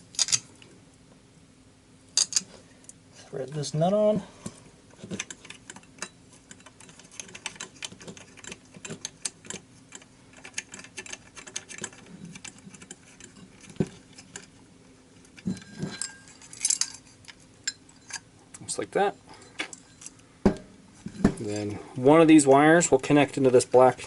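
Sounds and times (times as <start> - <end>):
nut threading clicks and scraping: 2.2 - 3.6, 4.9 - 18.6.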